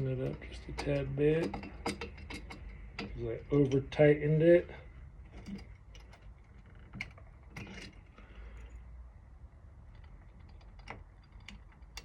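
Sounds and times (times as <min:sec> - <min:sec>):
small metal clicks of lock cylinder: 0:00.2 - 0:03.9, 0:09.9 - 0:12.0.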